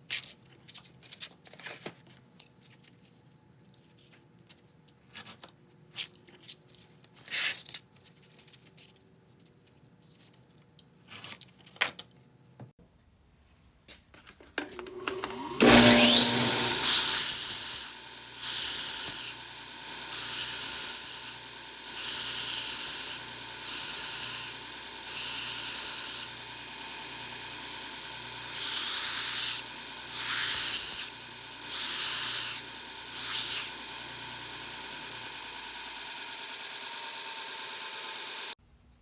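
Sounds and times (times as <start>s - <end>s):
rotary power tool whine: 14.7s - 38.6s
abrasive sanding hiss: 16.6s - 38.6s.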